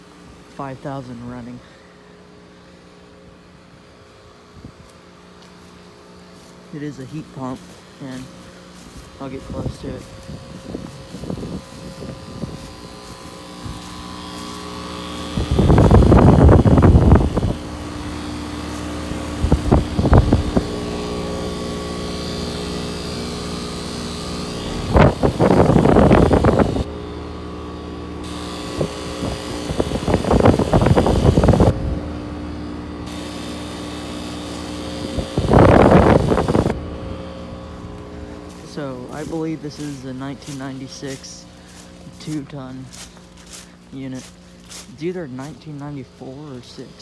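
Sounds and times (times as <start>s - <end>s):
heat pump humming: 0.0s - 47.0s
wind buffeting microphone: 9.0s - 13.9s, 15.3s - 18.5s, 19.1s - 21.2s, 24.6s - 26.9s, 28.3s - 32.1s, 35.0s - 38.0s.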